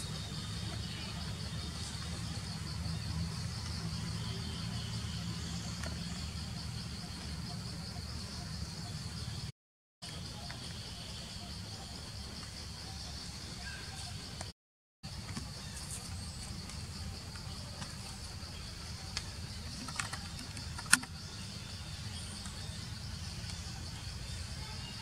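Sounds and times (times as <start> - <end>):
insects chirring: 0.0 - 14.5, 15.1 - 25.0
sharp clicks: 19.1 - 21.2.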